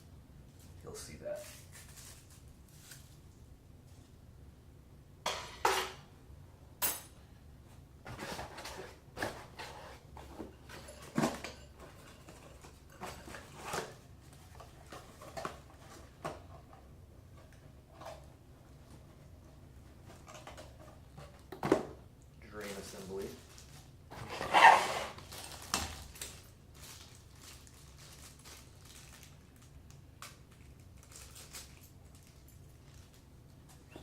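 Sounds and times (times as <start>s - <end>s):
packaging rustling: 22.6s - 33.8s.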